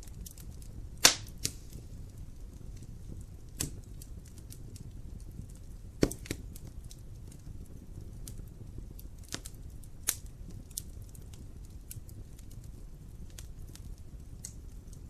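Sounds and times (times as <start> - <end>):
fire crackling and popping: 0.0 - 15.0.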